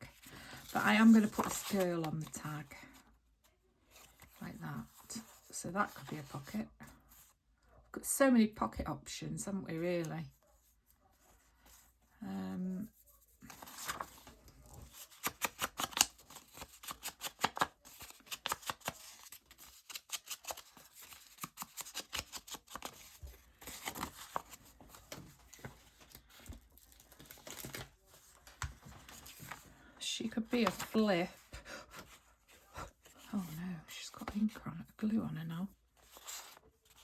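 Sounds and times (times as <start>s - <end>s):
scissors cutting paper: 14.8s - 24.6s.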